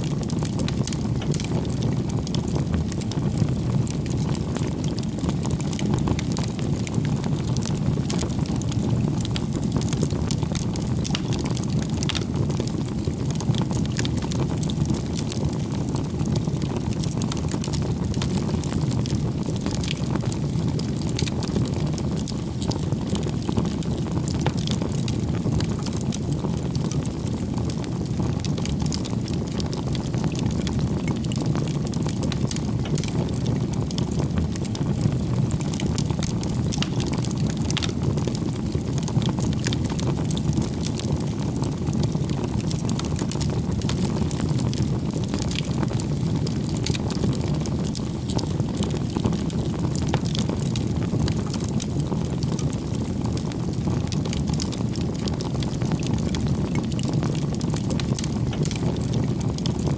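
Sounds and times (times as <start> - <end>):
bonfire flames rumbling: 0.0 - 59.9
fire crackling and popping: 0.0 - 59.9.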